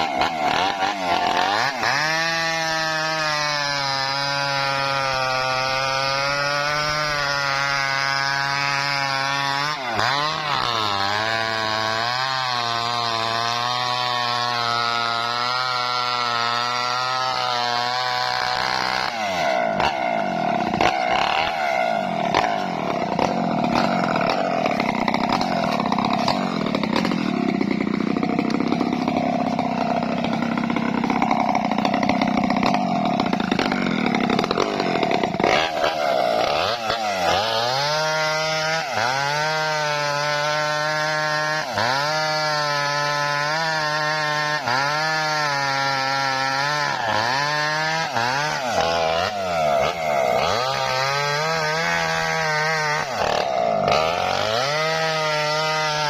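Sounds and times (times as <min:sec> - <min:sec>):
chainsaw cutting through trunk: 0:00.0 - 0:56.0.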